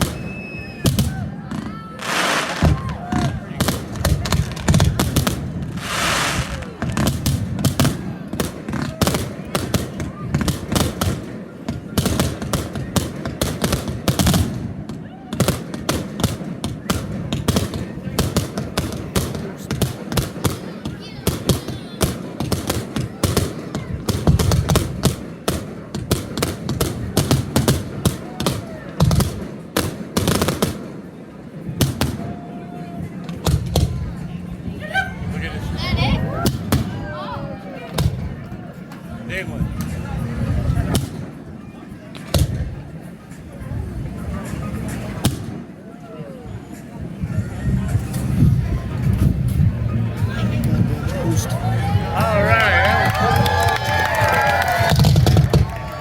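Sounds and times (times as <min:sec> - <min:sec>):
fireworks bursting: 0:00.0 - 0:31.2, 0:54.1 - 0:56.0
fireworks hissing crackle: 0:02.0 - 0:03.0, 0:05.6 - 0:07.3.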